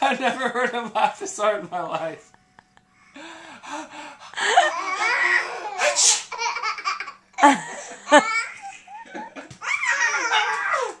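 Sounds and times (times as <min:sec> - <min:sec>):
small child laughing: 0:04.4 - 0:11.0.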